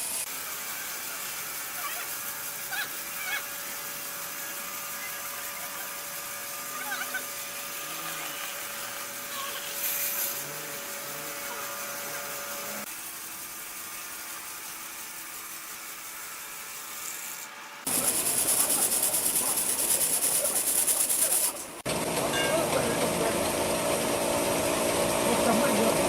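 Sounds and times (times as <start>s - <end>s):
machinery humming: 0.0s - 0.3s, 2.5s - 12.9s, 17.9s - 26.0s
saw cutting through wood: 0.0s - 21.9s.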